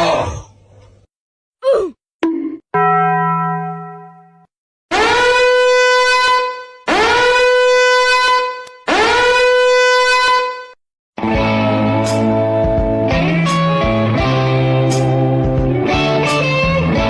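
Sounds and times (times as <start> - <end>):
long horn blasts: 4.9 - 10.8.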